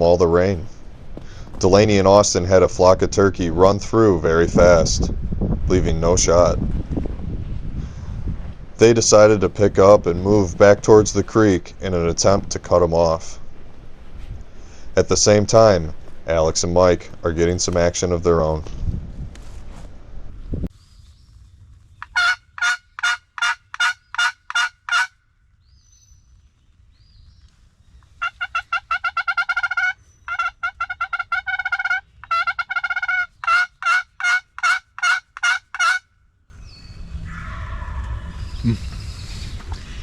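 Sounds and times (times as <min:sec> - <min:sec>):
turkey yelps: 0:22.0 - 0:25.1, 0:28.2 - 0:36.0, 0:37.2 - 0:39.4.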